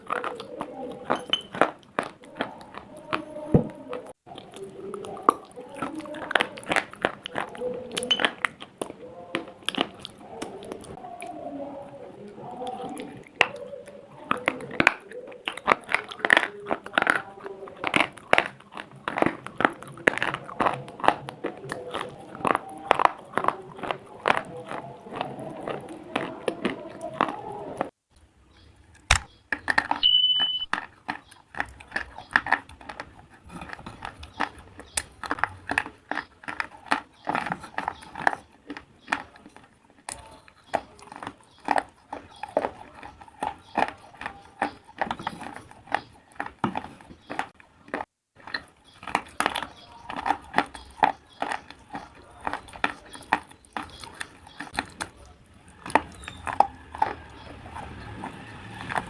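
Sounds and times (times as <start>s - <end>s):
crunching and chewing slate: 0.0s - 59.0s
short high beep: 30.0s - 30.7s.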